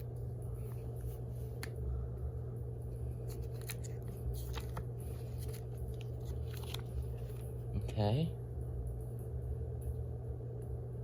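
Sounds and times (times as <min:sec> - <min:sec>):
steady low hum: 0:00.0 - 0:11.0
paper and cardboard packaging crinkling: 0:03.2 - 0:07.5.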